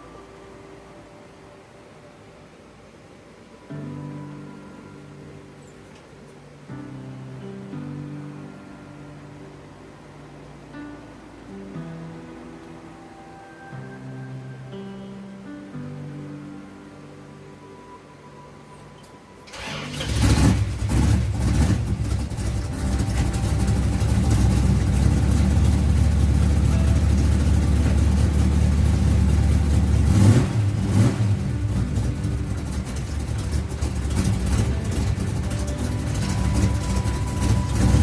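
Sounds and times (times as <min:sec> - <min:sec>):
car engine starting and idling: 0:19.4 - 0:38.0.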